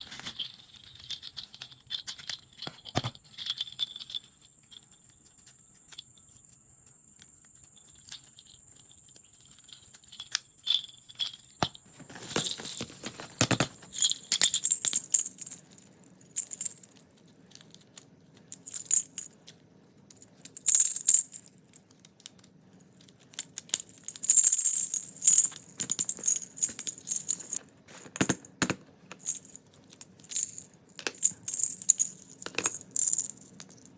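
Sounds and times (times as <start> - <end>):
clattering and rustling: 11.6 - 33.9
plastic toy blocks clicking: 28.2 - 33.9.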